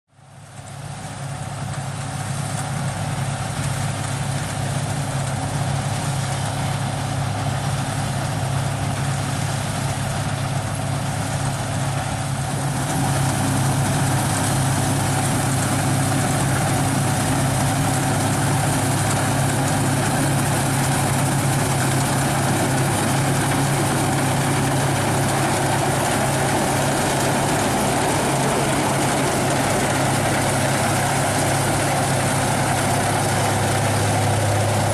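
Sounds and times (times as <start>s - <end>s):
combine harvester engine droning: 0.2s - 34.9s
machinery clattering: 12.5s - 34.9s.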